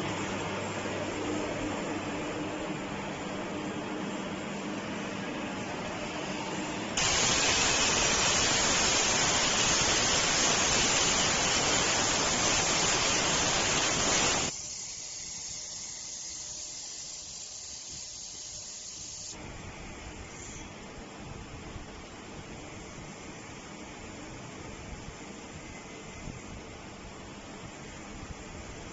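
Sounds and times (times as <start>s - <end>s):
low machine hum: 0.0s - 12.2s
loud steady cutting hiss: 7.0s - 28.9s.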